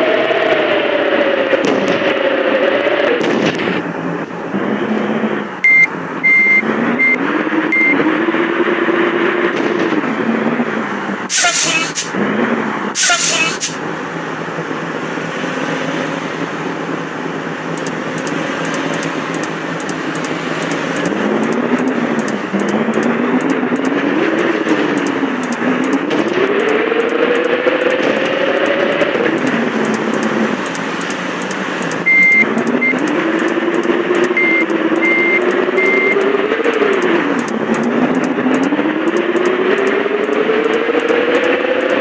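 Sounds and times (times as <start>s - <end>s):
bus engine running: 0.0s - 42.0s
road traffic rumble: 0.0s - 42.0s
short high beeps: 5.6s - 8.0s, 32.0s - 33.0s, 34.4s - 36.2s
faint high double ticks: 17.7s - 24.0s.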